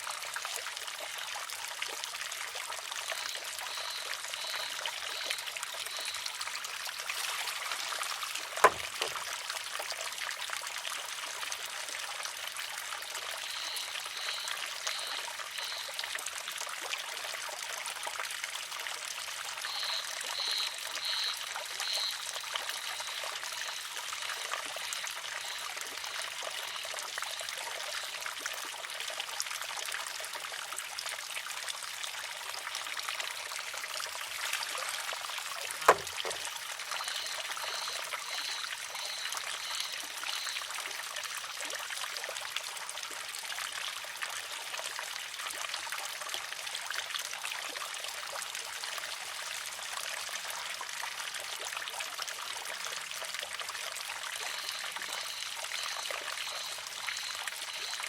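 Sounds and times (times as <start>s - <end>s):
water trickling: 0.0s - 45.0s, 49.7s - 58.0s
bamboo water fountain clack: 2.9s - 9.8s, 34.2s - 40.7s.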